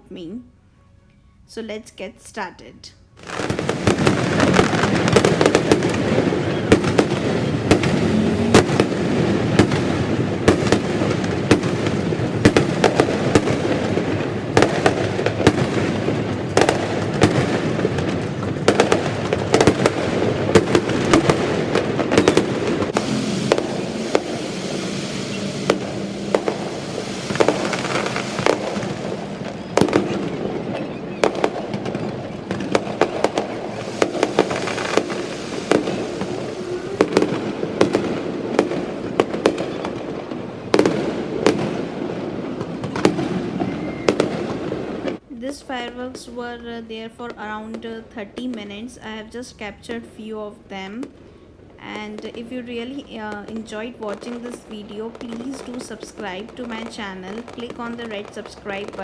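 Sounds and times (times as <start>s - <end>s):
fireworks bangs: 3.2s - 59.0s
fireworks crackling: 3.2s - 59.0s.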